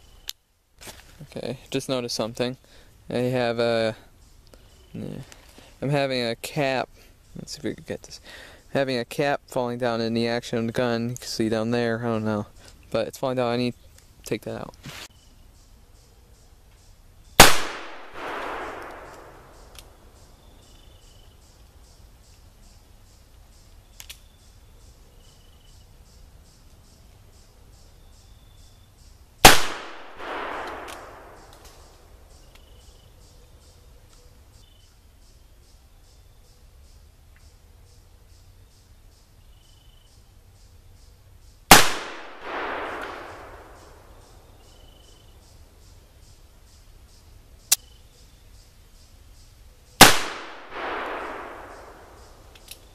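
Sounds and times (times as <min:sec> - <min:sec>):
insects chirping: 0:00.0 - 0:00.5, 0:01.4 - 0:14.3, 0:15.0 - 0:52.9
gunshot echo: 0:17.4 - 0:19.7, 0:29.4 - 0:31.9, 0:41.7 - 0:44.1, 0:50.0 - 0:52.4
revolver gunshot: 0:17.4 - 0:19.7, 0:29.4 - 0:31.9, 0:41.7 - 0:44.0, 0:50.0 - 0:52.4.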